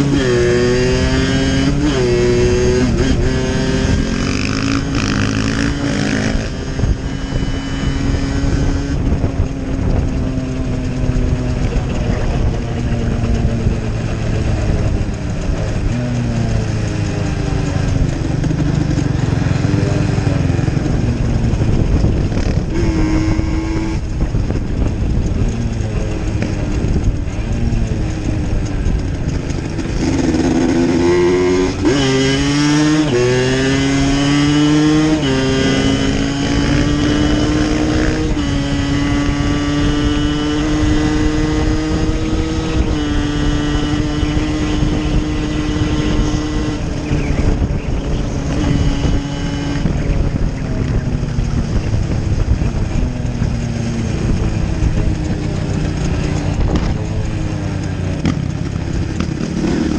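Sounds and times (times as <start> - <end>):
dirt bike engine accelerating: 0.0 - 59.9.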